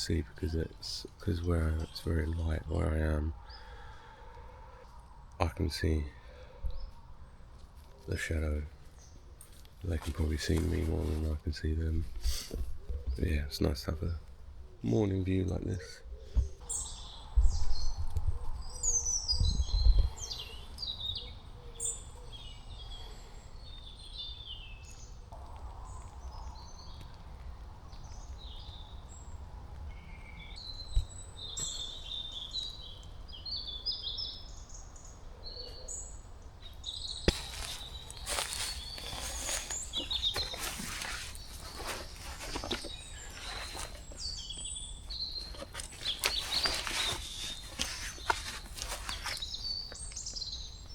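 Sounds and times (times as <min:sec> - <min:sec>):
small birds chirping and trilling: 0:00.0 - 0:50.9
close rustling and scuffing: 0:09.5 - 0:13.0, 0:37.2 - 0:50.5.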